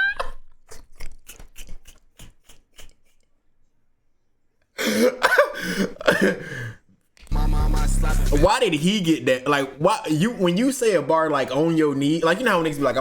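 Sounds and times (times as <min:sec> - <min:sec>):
man coughing: 0:04.8 - 0:06.8.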